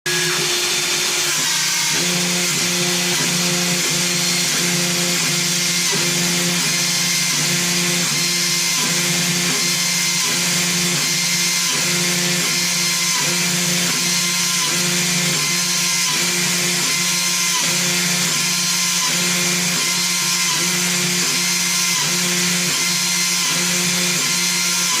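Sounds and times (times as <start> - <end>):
milling spindle high whine: 0.0 - 25.0.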